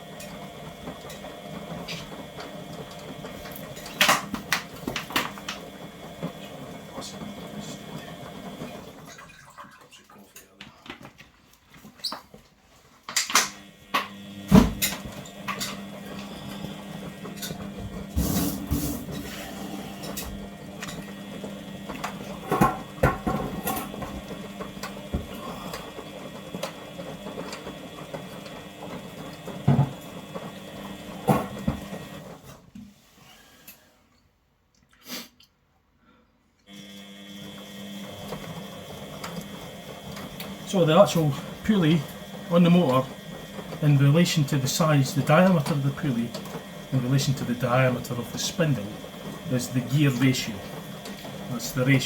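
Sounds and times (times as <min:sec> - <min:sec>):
washing machine motor humming: 0:00.0 - 0:10.1, 0:13.0 - 0:32.7, 0:36.7 - 0:52.0.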